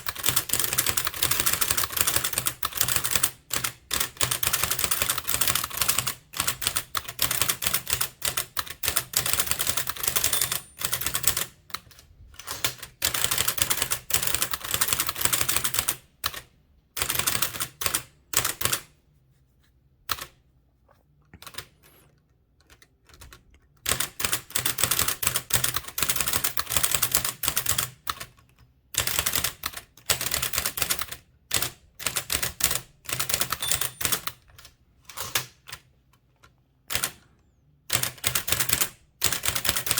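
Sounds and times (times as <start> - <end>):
typewriter clacking: 0.0 - 16.4, 29.0 - 34.5, 37.9 - 39.9.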